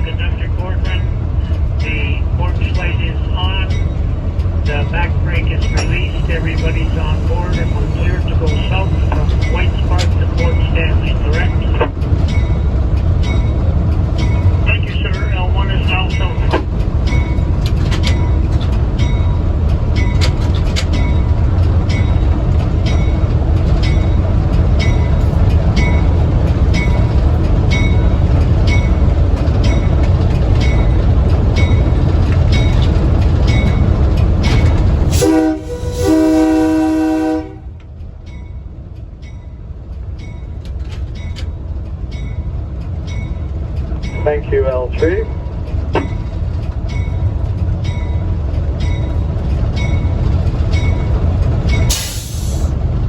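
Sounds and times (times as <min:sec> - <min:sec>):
train rumbling on track: 0:00.0 - 0:53.0
wheels clicking over rail joints: 0:03.6 - 0:35.2, 0:37.7 - 0:44.3
train horn: 0:35.1 - 0:37.8.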